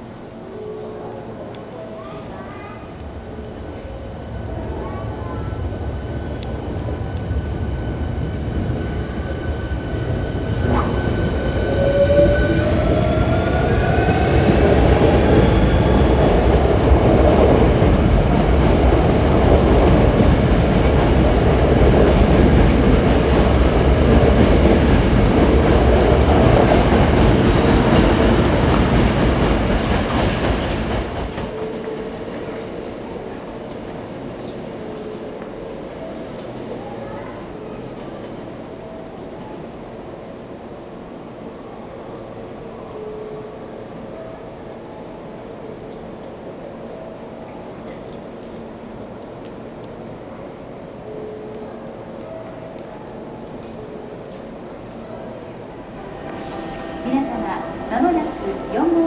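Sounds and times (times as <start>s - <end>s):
train wheels rumbling and clattering: 2.6s - 38.6s.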